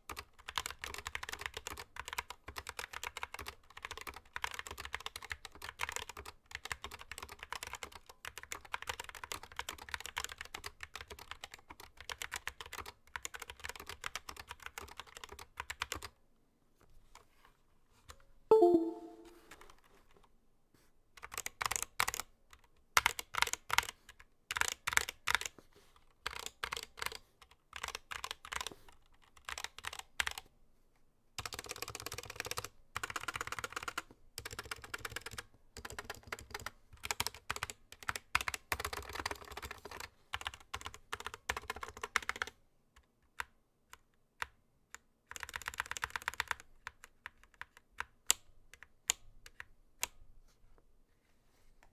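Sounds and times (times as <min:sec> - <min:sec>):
keyboard typing: 0:18.5 - 0:19.3.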